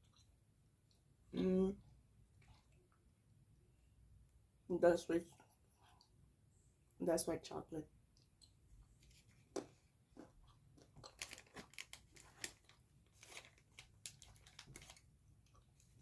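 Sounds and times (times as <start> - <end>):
faint chewing crunches: 0.0 - 1.1, 8.1 - 16.0.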